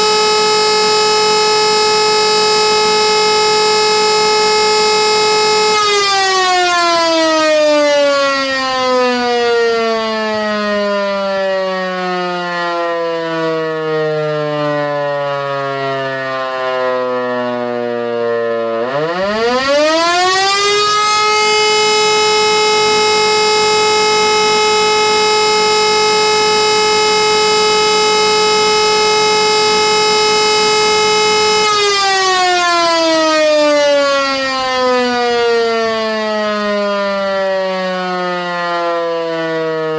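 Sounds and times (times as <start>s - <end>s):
civil defence siren howling: 0.0s - 39.9s.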